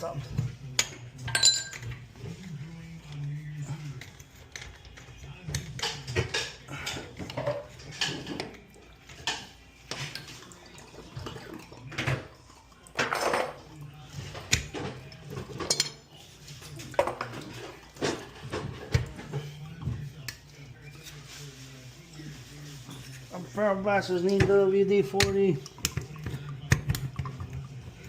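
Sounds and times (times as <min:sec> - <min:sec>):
tools clinking and knocking: 0:00.3 - 0:02.1, 0:14.4 - 0:16.1.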